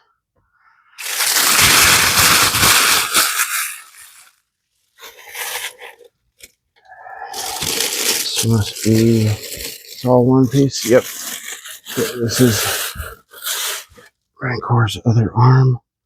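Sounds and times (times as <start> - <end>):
packaging wrap crinkling and tearing: 1.0 - 6.6, 7.2 - 14.1.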